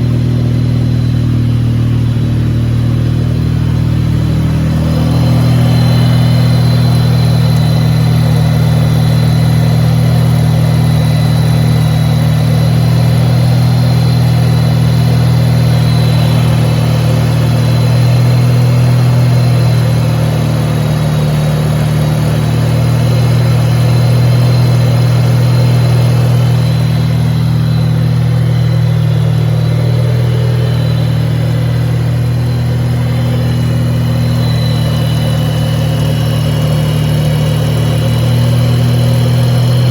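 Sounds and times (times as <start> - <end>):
rotary engine idling: 0.0 - 39.9
thin high whine: 0.8 - 39.9.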